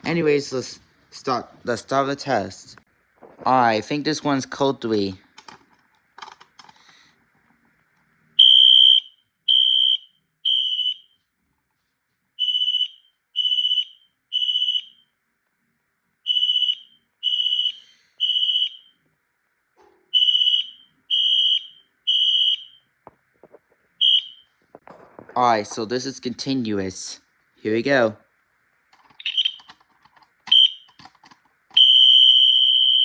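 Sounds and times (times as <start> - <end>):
fire alarm horn short high tones: 8.4 - 11.2, 16.3 - 18.9, 20.1 - 22.8, 31.8 - 33.0.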